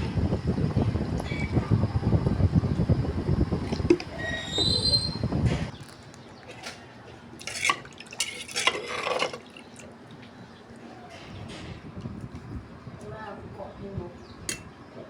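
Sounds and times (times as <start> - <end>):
rumbling noise: 0.0 - 5.8
high squeak: 4.2 - 5.4
metal utensils scraping a pot: 7.4 - 9.4.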